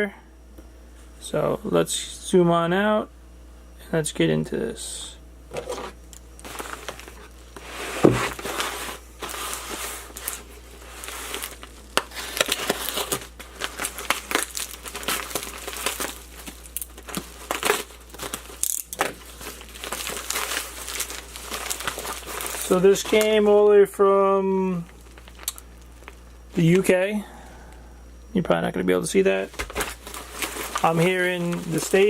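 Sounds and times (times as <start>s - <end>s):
packaging crinkling and tearing: 5.6s - 23.5s, 24.9s - 26.9s, 29.4s - 32.0s.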